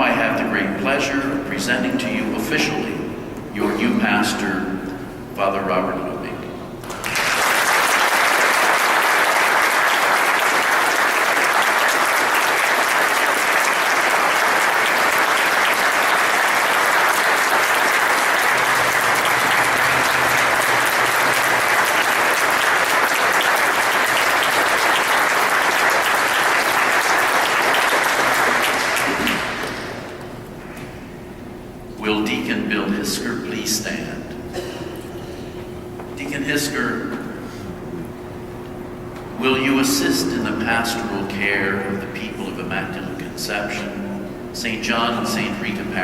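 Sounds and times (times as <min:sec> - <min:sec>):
congregation applauding: 0:06.8 - 0:30.3.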